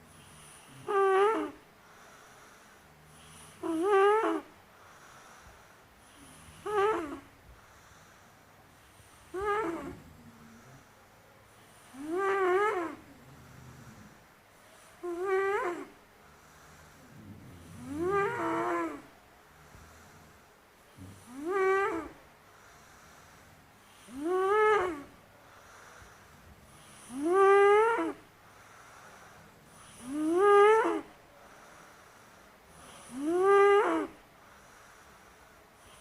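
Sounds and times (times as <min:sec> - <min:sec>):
boy snoring: 0:00.0 - 0:04.6, 0:05.3 - 0:07.3, 0:08.9 - 0:11.0, 0:11.7 - 0:14.2, 0:14.8 - 0:22.2, 0:22.8 - 0:28.3, 0:29.1 - 0:31.1, 0:32.7 - 0:34.2.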